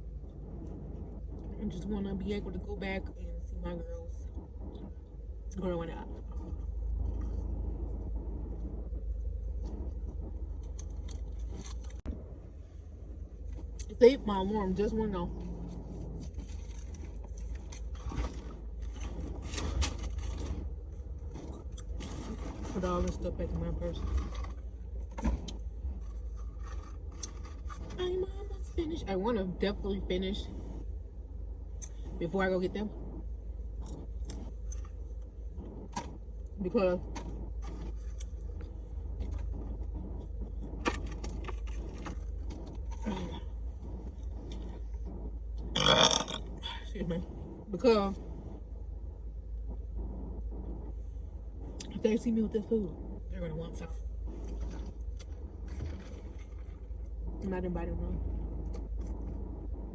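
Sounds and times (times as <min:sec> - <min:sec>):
car engine idling: 0:00.0 - 0:59.9
low hum: 0:00.0 - 0:59.9
small objects rustling and scraping: 0:23.9 - 0:28.0.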